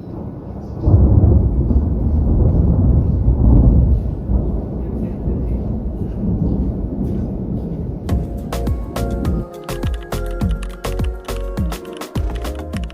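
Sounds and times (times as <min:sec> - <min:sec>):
thunder rumbling: 0:00.0 - 0:09.6.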